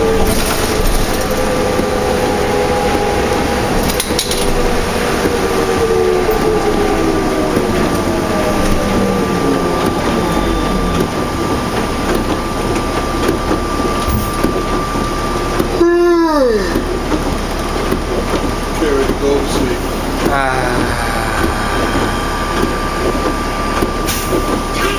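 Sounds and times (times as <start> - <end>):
heavy rain: 0.0 - 12.8, 19.4 - 24.9
bus drivetrain whine: 0.0 - 24.9
steady high tone: 20.2 - 24.8.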